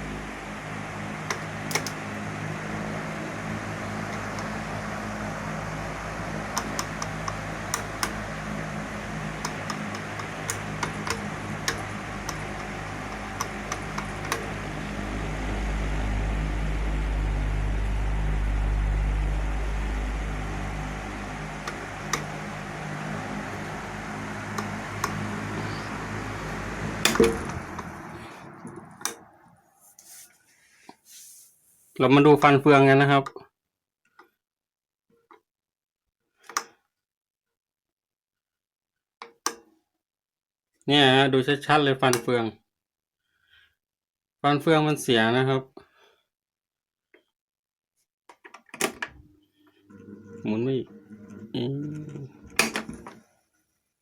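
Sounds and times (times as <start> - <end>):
electric fan motor hum: 0.0 - 30.2, 48.8 - 53.3
fan gearbox clicking: 1.2 - 2.2, 3.4 - 5.2, 6.0 - 15.2, 21.0 - 29.3, 50.0 - 53.2.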